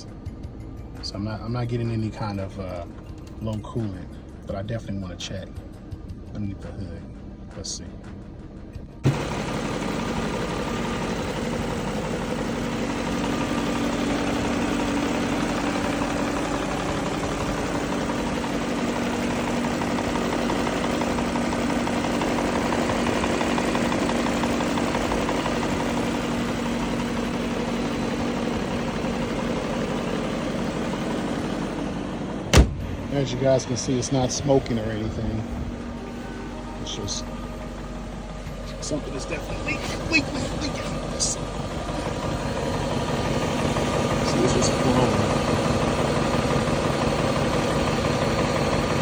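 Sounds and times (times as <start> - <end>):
car engine idling: 0.0 - 49.0.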